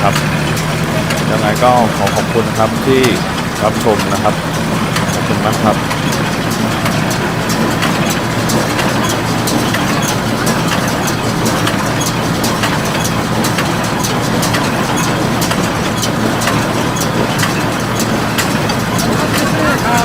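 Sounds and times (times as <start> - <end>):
baler mechanical clicks: 0.0 - 20.0
tractor engine running: 0.0 - 20.0.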